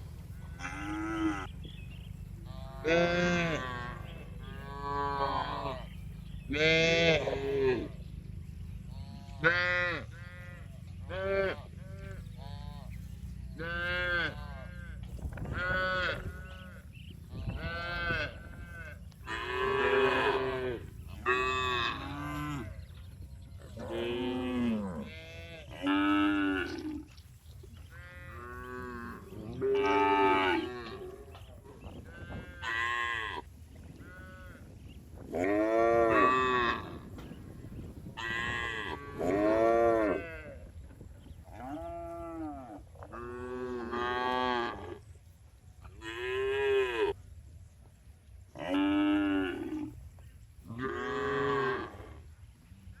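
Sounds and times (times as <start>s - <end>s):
cattle mooing: 0.4s - 1.5s, 2.5s - 5.9s, 17.5s - 22.8s, 23.7s - 27.1s, 28.0s - 31.5s, 35.3s - 37.2s, 38.2s - 40.6s, 41.6s - 45.1s, 50.7s - 52.3s.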